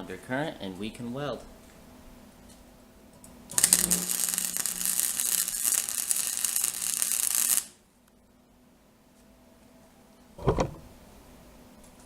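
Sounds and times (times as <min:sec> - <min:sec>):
electric welding arc crackling: 0:03.5 - 0:07.8.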